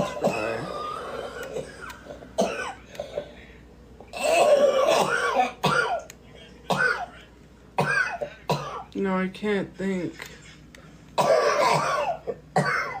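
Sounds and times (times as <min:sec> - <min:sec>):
woman coughing: 0:00.0 - 0:00.8, 0:01.5 - 0:03.2, 0:04.2 - 0:06.0, 0:06.7 - 0:07.1, 0:07.8 - 0:08.9, 0:11.2 - 0:13.0.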